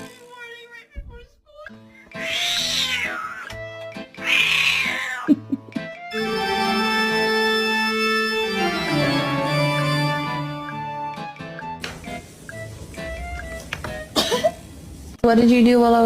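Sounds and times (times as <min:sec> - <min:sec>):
organ chords: 0:05.7 - 0:14.2.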